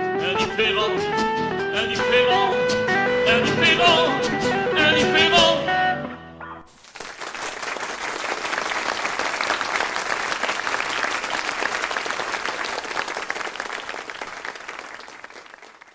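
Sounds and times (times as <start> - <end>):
audience applauding: 6.7 - 15.9.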